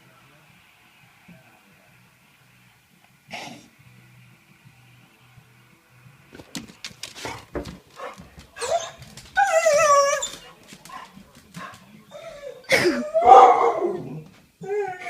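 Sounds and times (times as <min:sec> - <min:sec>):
dog snuffling: 0:06.6 - 0:12.0
dog yelp: 0:08.0 - 0:10.4, 0:12.2 - 0:14.0
dog whining: 0:08.6 - 0:10.4, 0:12.1 - 0:15.0.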